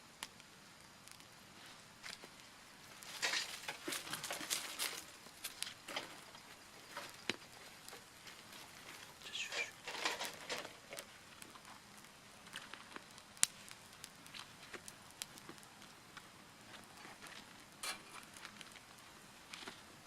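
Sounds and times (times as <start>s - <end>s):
rustling: 1.6s - 15.6s
twigs snapping and crackling: 3.0s - 6.3s, 6.9s - 18.9s.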